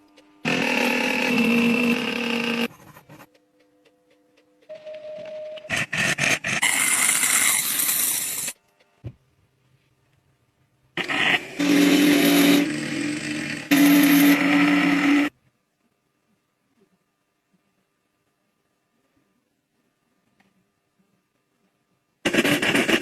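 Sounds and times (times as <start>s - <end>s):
metal lathe cutting: 0.5s - 2.7s, 11.0s - 15.3s.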